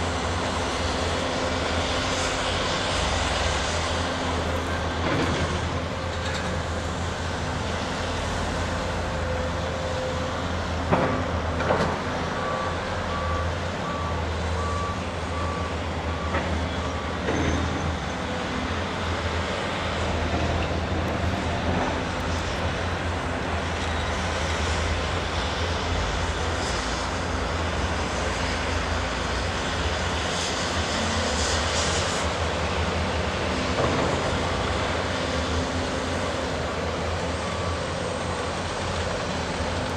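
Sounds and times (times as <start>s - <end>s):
heavy construction machinery running: 0.0s - 39.9s
reversing alarm beeping: 12.4s - 17.9s.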